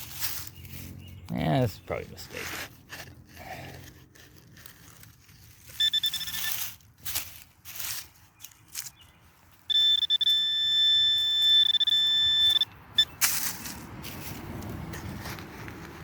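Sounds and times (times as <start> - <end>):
soil being dug: 1.9 - 9.0, 12.5 - 16.0
metal detector blip: 5.7 - 6.7, 9.7 - 13.3
metal detector signal tone: 5.7 - 6.8, 9.7 - 13.2.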